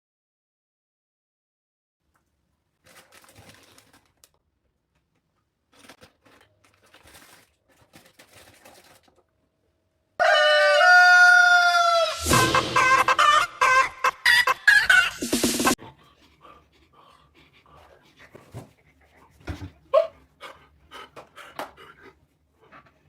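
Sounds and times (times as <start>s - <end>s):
rooster crowing: 10.2s - 15.2s
loud hit: 12.1s - 14.1s.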